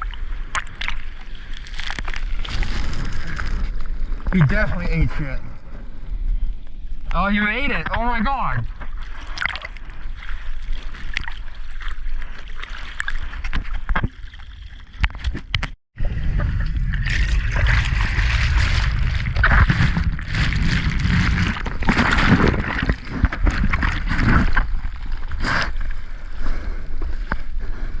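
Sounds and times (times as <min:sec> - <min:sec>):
ocean water sloshing and splashing: 0:08.6 - 0:28.0
wind buffeting microphone: 0:16.0 - 0:24.7.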